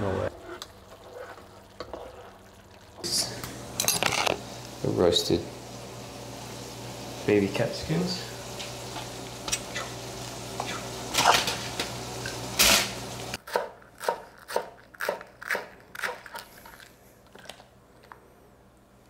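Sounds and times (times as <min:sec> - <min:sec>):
utensils clattering: 0:03.2 - 0:04.4, 0:11.1 - 0:13.0.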